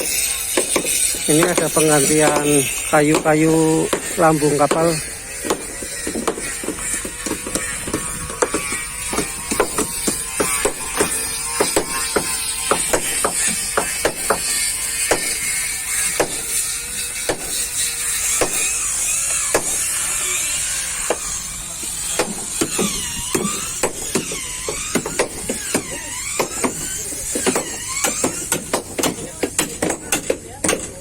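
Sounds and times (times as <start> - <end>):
hammering on wooden hull: 0.6 - 3.3, 3.9 - 14.5, 15.1 - 15.4, 16.2 - 16.5, 18.4 - 18.7, 19.5 - 19.8, 22.2 - 31.0.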